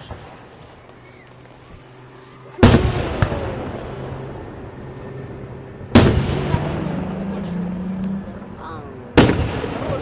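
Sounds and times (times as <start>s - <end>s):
firework bursting with echoing boom: 2.6s - 4.4s, 5.9s - 7.4s, 9.2s - 10.0s.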